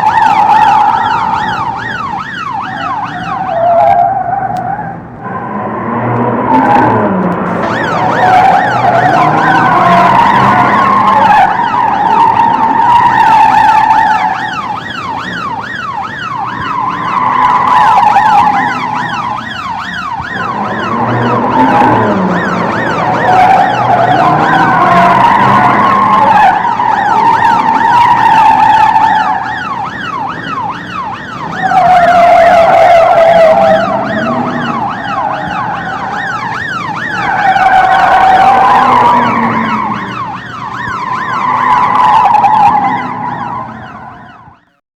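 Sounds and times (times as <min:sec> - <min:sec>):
car engines: 0:00.0 - 0:44.8
police sirens: 0:00.0 - 0:44.8
tyres screeching: 0:03.8 - 0:14.1, 0:16.6 - 0:29.5, 0:31.6 - 0:44.3.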